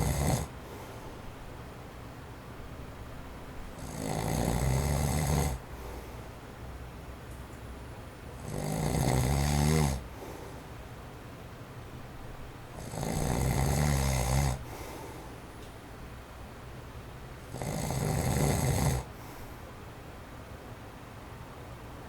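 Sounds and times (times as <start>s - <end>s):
man snoring: 0.0s - 0.7s, 3.8s - 5.7s, 8.4s - 10.4s, 12.8s - 14.9s, 17.5s - 19.2s
electric fan whooshing: 0.0s - 22.0s.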